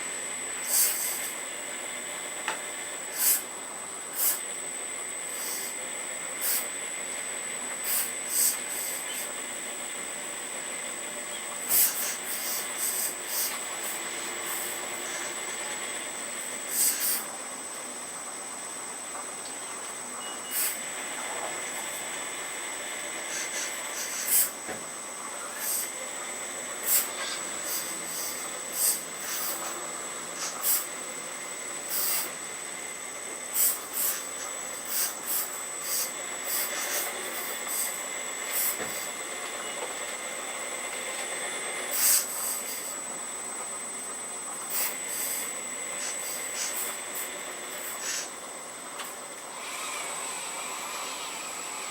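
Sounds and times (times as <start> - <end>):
hydraulic pump whining: 0.0 - 3.6, 11.2 - 17.3, 20.4 - 51.9
short hissing bursts: 0.6 - 1.5, 3.1 - 3.5, 4.1 - 4.5, 5.3 - 5.8, 6.4 - 6.7, 7.8 - 9.3, 11.6 - 15.4, 16.4 - 17.3, 20.4 - 20.9, 23.2 - 24.6, 25.5 - 26.0, 26.8 - 31.1, 31.8 - 32.4, 33.5 - 39.2, 41.9 - 43.1, 44.7 - 48.4, 49.5 - 51.9.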